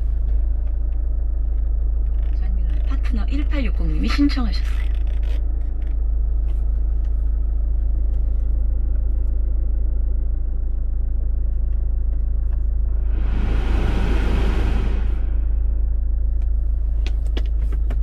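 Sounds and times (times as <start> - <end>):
rushing noise: 12.9 - 16.3.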